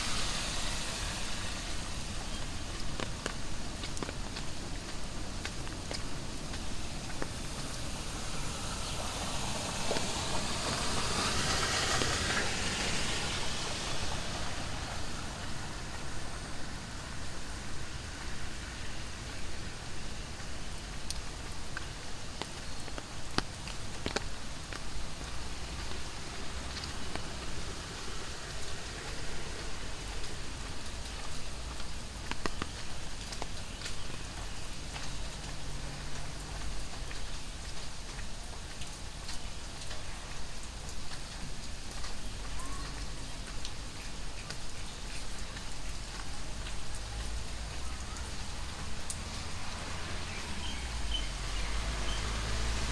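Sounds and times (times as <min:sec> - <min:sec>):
heavy rain on hard surfaces: 0:00.0 - 0:52.9.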